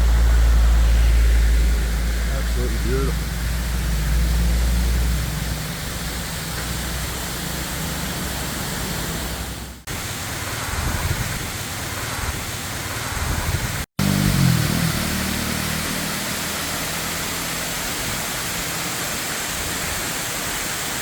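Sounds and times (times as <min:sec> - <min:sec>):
low engine hum: 0:00.0 - 0:09.8
waterfall rushing: 0:00.0 - 0:21.0.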